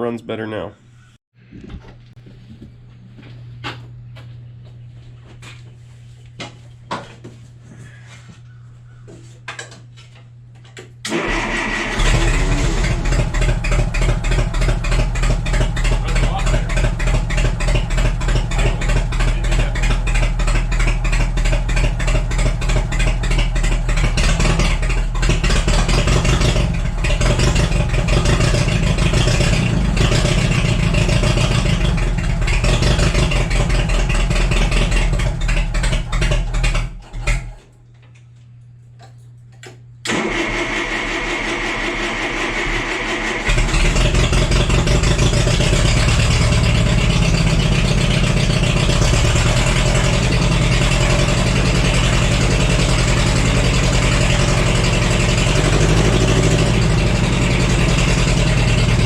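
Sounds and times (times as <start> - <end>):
forklift engine running: 11.0 - 37.6, 40.0 - 59.0.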